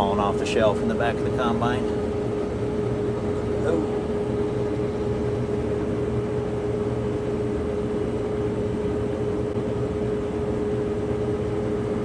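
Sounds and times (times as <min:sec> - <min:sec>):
steady whine: 0:00.0 - 0:07.6
combine harvester drone: 0:00.0 - 0:09.6.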